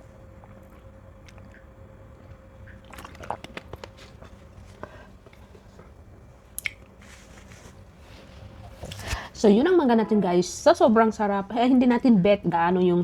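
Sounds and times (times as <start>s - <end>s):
person chewing fruit: 0.0s - 7.0s
wet mouth clicks: 0.4s - 4.4s, 6.6s - 6.9s.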